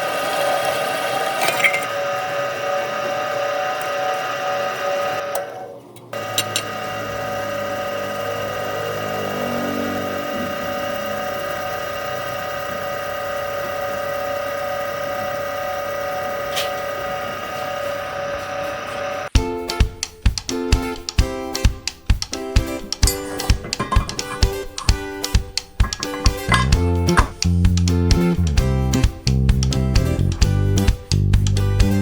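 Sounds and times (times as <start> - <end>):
power tool motor whining: 0.0 - 19.3, 22.9 - 27.4
music: 19.3 - 32.0.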